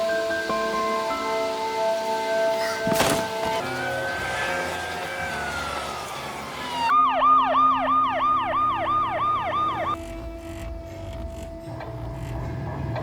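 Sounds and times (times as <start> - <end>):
emergency siren wailing and yelping: 3.8 - 10.0.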